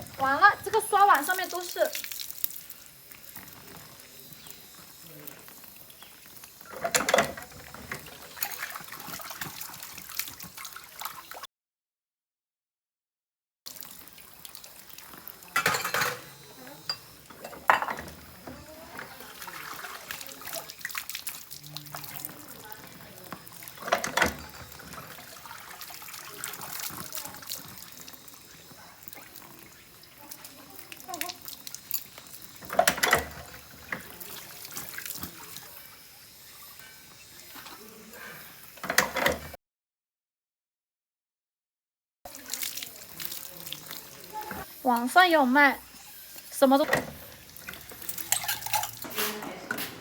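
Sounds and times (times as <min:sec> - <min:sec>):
water running: 0:00.0 - 0:11.4, 0:13.7 - 0:39.6, 0:42.3 - 0:50.0
loud dish clatters: 0:06.7 - 0:08.2, 0:15.6 - 0:19.2, 0:23.8 - 0:24.7, 0:32.0 - 0:34.1, 0:46.8 - 0:50.0
bowls and utensils clinking: 0:06.7 - 0:09.6, 0:15.4 - 0:20.8, 0:21.9 - 0:25.6, 0:31.1 - 0:35.7, 0:45.9 - 0:50.0.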